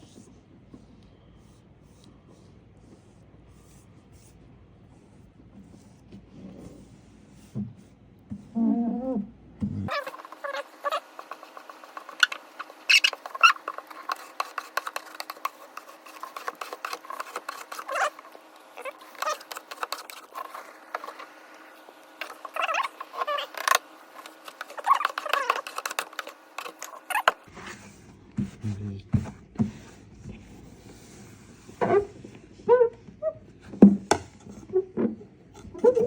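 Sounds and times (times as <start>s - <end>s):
squeegee scraping and squeaking: 8.4s - 27.9s, 34.5s - 36.0s.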